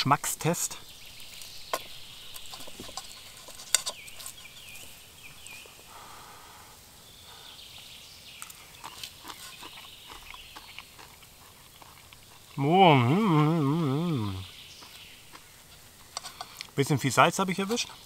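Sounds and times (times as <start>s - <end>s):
person chewing: 8.4s - 16.8s.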